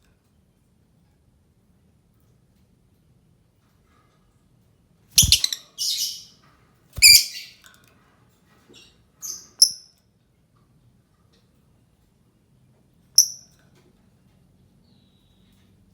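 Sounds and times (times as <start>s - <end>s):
bird chirping and screeching: 5.2s - 6.3s, 7.0s - 7.6s.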